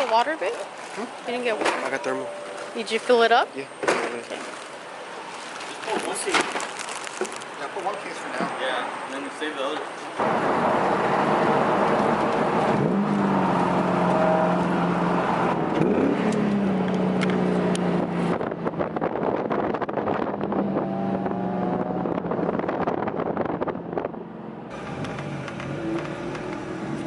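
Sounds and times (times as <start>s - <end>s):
car engine running: 10.2s - 27.0s.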